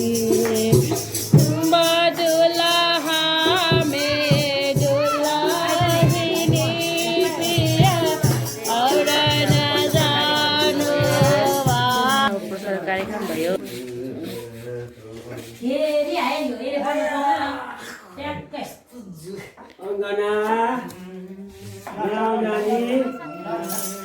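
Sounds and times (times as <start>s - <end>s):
light percussion: 0.0s - 16.2s, 21.6s - 24.0s
rattle or shaker beat: 0.0s - 16.2s, 23.6s - 24.0s.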